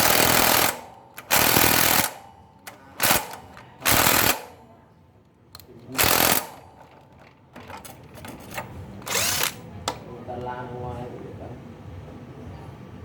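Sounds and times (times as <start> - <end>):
impact driver hammering: 0.0 - 4.6, 5.6 - 10.0.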